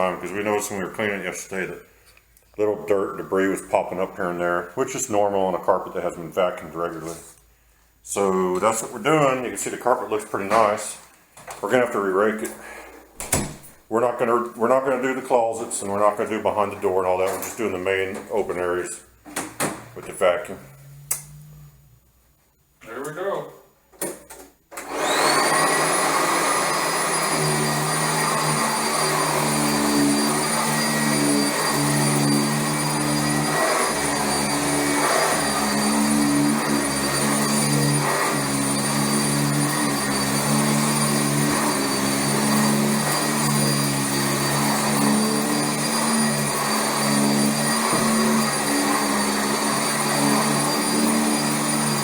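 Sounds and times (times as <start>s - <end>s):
vacuum cleaner motor whine: 24.7s - 52.0s.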